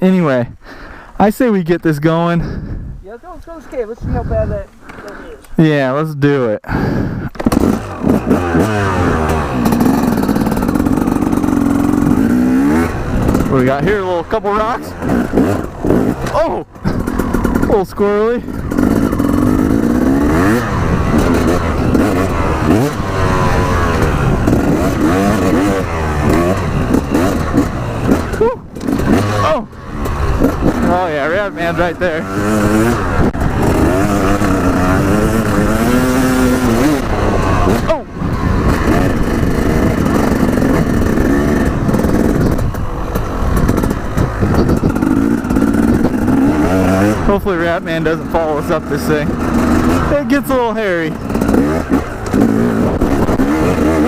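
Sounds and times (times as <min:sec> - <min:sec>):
dirt bike engine revving: 0:06.7 - 0:54.0
clicks and knocks from riding: 0:42.1 - 0:45.0.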